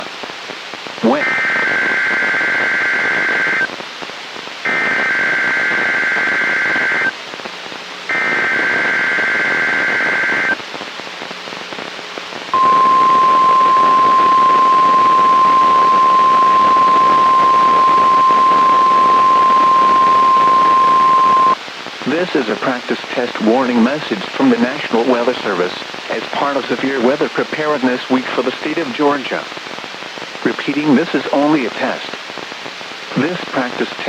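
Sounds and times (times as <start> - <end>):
radio hiss: 0.0 - 34.0
steady warning alarm tone: 12.6 - 21.6
warbling two-tone digital header: 12.6 - 21.6.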